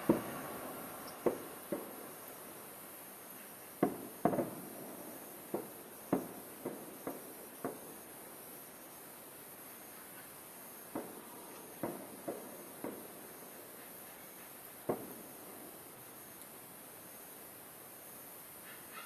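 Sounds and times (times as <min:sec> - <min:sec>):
distant firework shells bursting: 0:00.0 - 0:02.4, 0:03.8 - 0:08.0, 0:10.9 - 0:13.3, 0:14.8 - 0:15.4.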